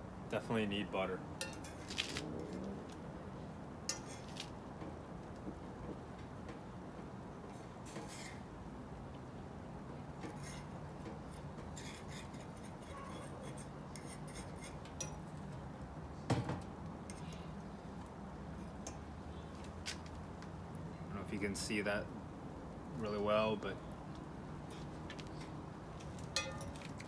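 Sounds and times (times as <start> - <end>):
utensils clinking on a dish: 24.8 - 27.0.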